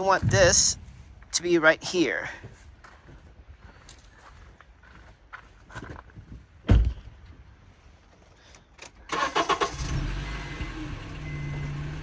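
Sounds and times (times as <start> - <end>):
loud thump: 6.6 - 7.1
car engine cranking and idling: 8.2 - 12.0.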